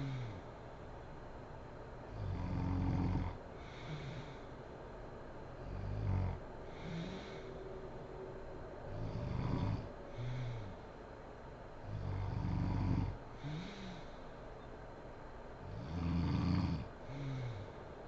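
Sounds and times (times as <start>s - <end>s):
woman snoring: 0.0s - 0.4s, 2.1s - 4.4s, 5.6s - 7.6s, 8.9s - 10.8s, 11.8s - 14.2s, 15.6s - 17.7s
pitched breath sound: 6.6s - 11.0s.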